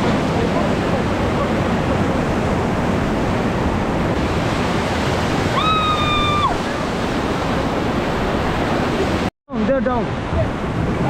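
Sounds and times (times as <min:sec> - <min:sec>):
river rapids roaring: 0:00.0 - 0:11.0.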